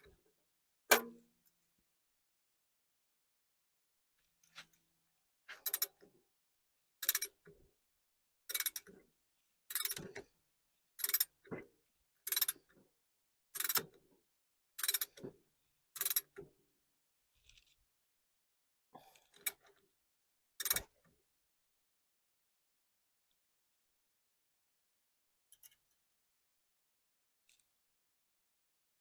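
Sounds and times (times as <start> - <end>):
tube bender click and clunk: 0.9 - 1.3.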